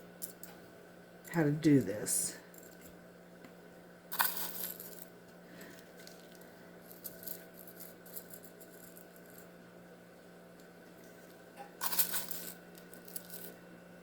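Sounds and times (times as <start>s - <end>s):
glass pieces clinking and scraping: 11.8s - 13.6s.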